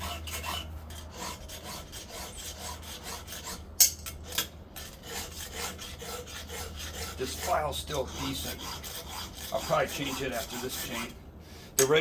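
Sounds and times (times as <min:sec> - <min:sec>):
file rasping on saw chain: 0:00.0 - 0:11.2.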